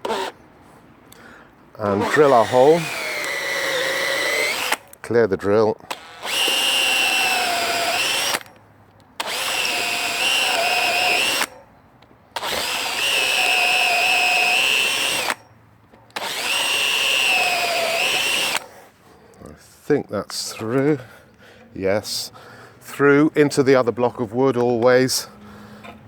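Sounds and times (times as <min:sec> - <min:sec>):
electric drill boring through wood: 0:00.0 - 0:00.4, 0:01.8 - 0:04.9, 0:05.9 - 0:08.5, 0:09.2 - 0:11.5, 0:12.4 - 0:15.4, 0:16.2 - 0:18.7.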